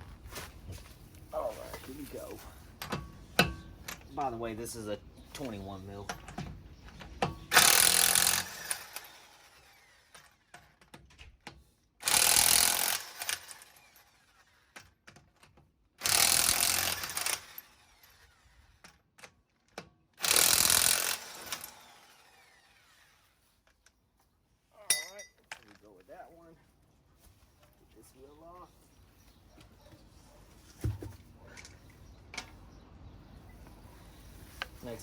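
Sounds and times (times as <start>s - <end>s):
impact wrench hammering: 2.8s - 3.7s.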